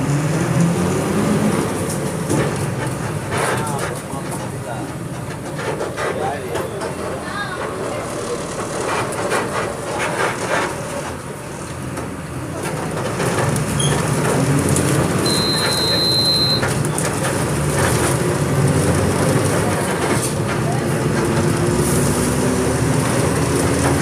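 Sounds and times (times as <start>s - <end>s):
diesel bus engine running: 0.0s - 24.0s
high-pitched beep: 15.2s - 16.6s.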